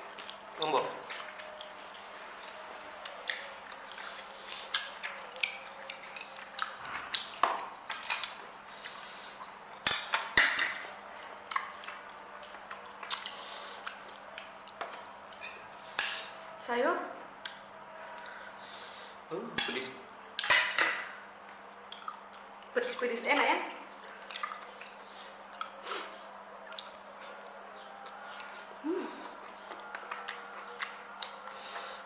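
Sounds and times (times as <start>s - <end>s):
cutlery clinking on a plate: 15.4s - 16.3s, 19.6s - 21.1s.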